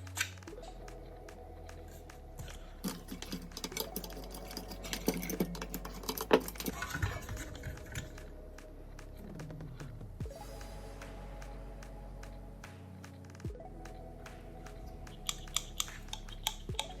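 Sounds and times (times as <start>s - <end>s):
small hard parts clicking: 2.8s - 8.2s, 15.2s - 17.0s.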